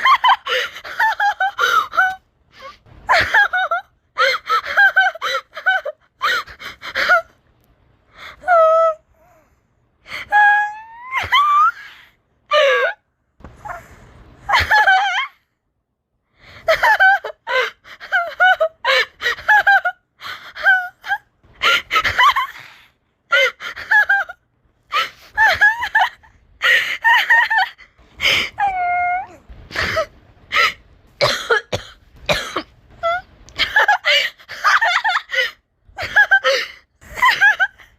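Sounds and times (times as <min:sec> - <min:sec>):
person laughing hard: 0:14.5 - 0:15.3, 0:23.4 - 0:28.6, 0:33.0 - 0:37.9.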